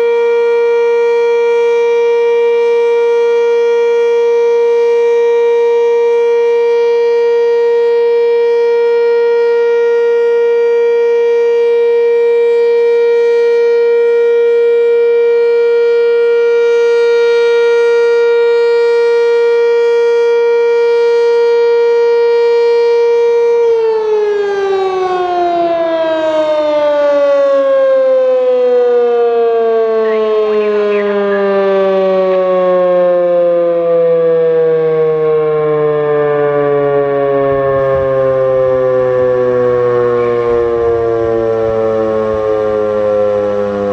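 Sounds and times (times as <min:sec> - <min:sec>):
warning siren: 0:00.0 - 0:43.9.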